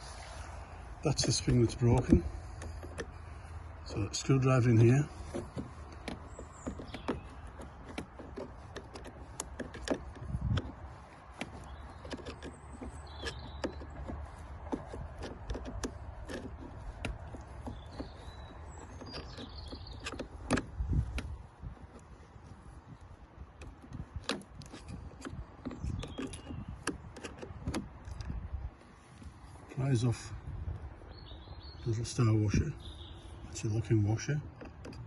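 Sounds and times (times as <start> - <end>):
screwdriver clicking on door lock: 18.8 - 22.0, 23.6 - 28.3.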